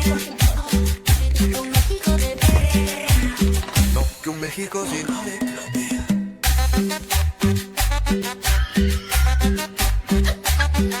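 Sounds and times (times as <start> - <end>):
upbeat music with bass and percussion: 0.0 - 11.0.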